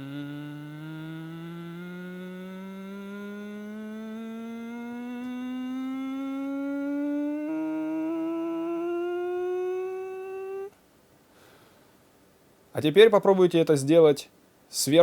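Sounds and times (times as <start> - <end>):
lower hummed tone: 0.0 - 10.8
man humming rising glissando: 0.0 - 10.8.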